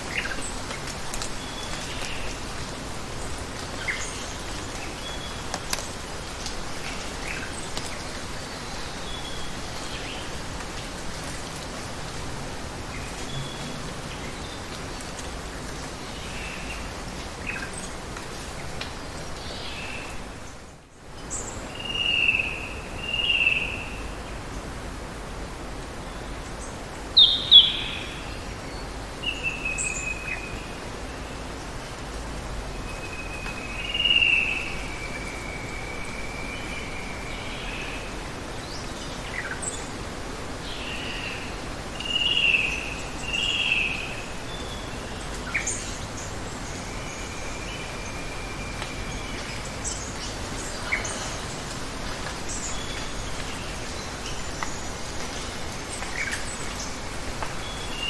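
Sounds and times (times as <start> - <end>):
running water hiss: 21.2 - 58.0.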